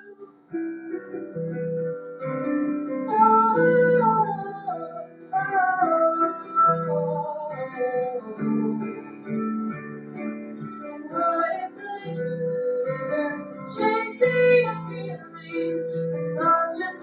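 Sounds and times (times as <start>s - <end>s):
woman singing: 0.0s - 0.3s, 2.8s - 9.4s, 10.6s - 17.0s
instrumental accompaniment: 0.0s - 17.0s.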